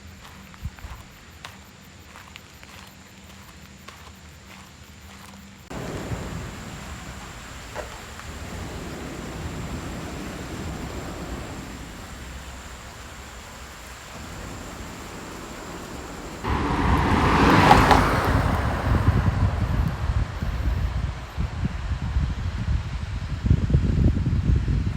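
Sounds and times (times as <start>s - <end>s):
waterfall rushing: 5.7s - 21.5s
wind rumbling on microphone: 5.7s - 24.9s.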